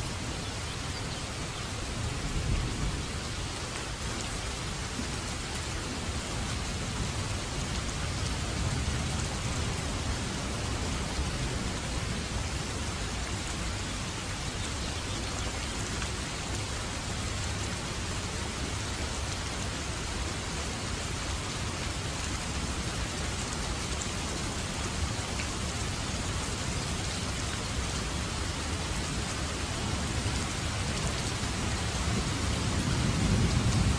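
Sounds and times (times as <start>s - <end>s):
steady rain: 0.0s - 33.9s.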